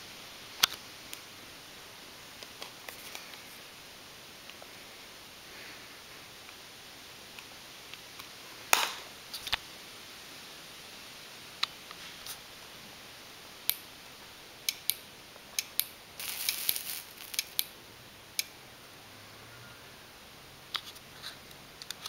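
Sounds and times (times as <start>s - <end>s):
crackling: 13.6s - 17.8s
sharp irregular clicks: 14.7s - 15.0s.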